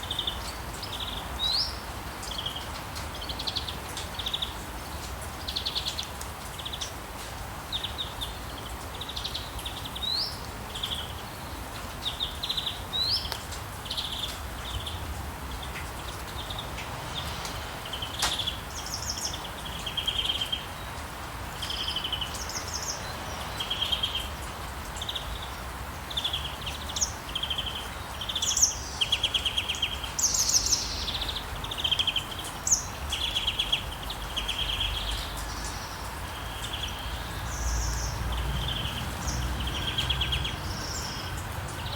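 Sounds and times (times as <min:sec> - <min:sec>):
steady rain: 0:00.0 - 0:41.9
birds chirping and trilling: 0:24.9 - 0:41.9.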